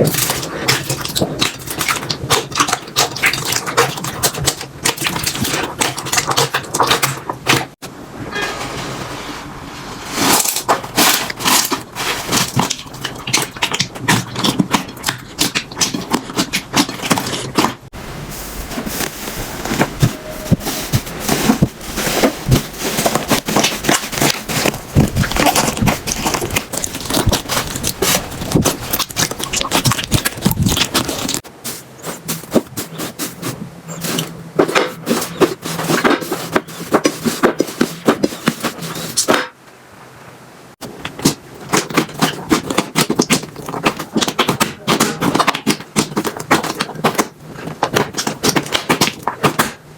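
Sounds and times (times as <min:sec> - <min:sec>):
slime crackling and popping: 0:20.1 - 0:31.4, 0:41.0 - 0:49.8.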